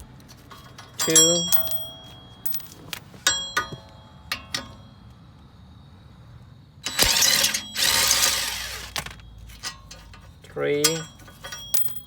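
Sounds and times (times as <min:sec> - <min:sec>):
metallic clinks: 0:00.5 - 0:05.2, 0:09.2 - 0:12.0
power driver spinning bolt: 0:06.9 - 0:09.2.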